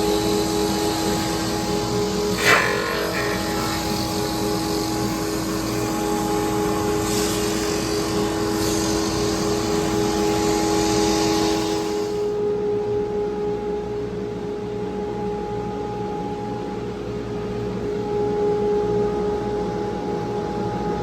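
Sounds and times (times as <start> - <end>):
power tool grinding wood: 0.0 - 12.0.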